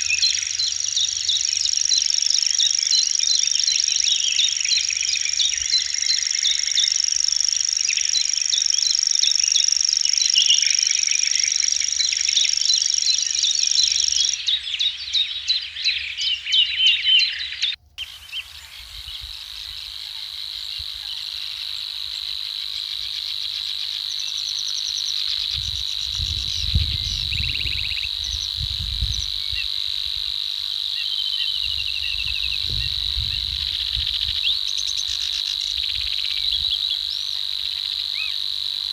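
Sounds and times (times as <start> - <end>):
high insect drone: 0.0 - 15.2, 18.0 - 38.9
birds chirping: 0.0 - 22.3
low insect chorus: 0.0 - 38.9.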